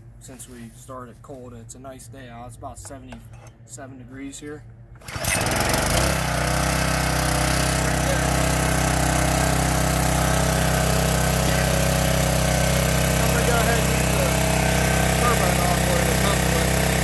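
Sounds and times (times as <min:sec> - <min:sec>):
pressure washer engine running: 0:05.0 - 0:17.0.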